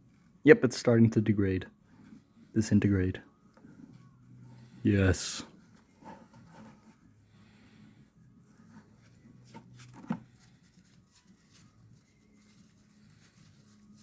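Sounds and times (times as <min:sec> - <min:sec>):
rubbing and scraping on plastic: 0:03.4 - 0:14.0.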